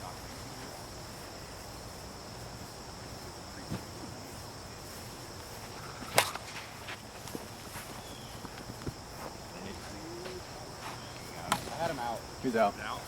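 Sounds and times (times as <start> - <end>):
high insect buzz: 0.0 - 13.0
plastic bat striking ball: 6.1 - 6.6.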